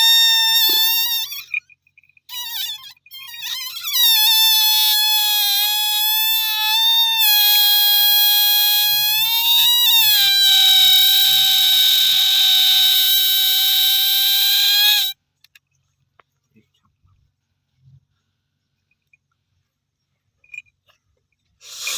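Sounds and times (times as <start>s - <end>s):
air squealing from balloon neck: 0.0s - 1.6s, 2.3s - 15.2s, 21.6s - 21.9s.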